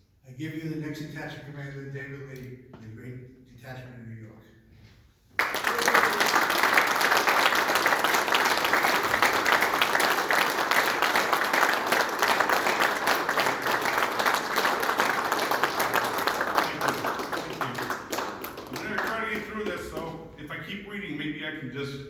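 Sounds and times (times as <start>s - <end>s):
audience applauding: 5.4s - 20.2s.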